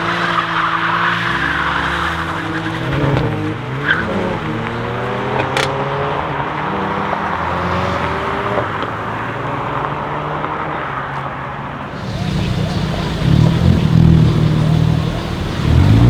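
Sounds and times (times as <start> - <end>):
car engine accelerating hard: 0.0 - 11.0, 11.9 - 16.0
sharp exhaust pops: 12.0 - 16.0
tyre squeal: 12.0 - 16.0.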